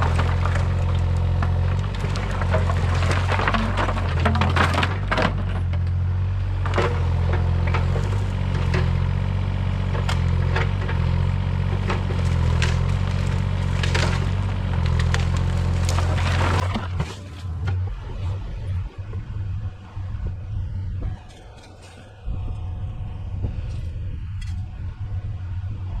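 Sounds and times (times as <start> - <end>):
branches cracking and snapping: 0.0 - 5.9, 9.9 - 17.8
steady low drone: 0.0 - 26.0.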